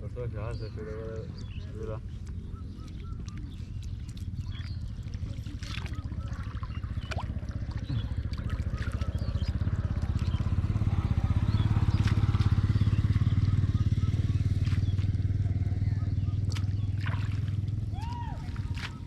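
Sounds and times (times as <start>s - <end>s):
small engine running: 7.8s - 17.9s.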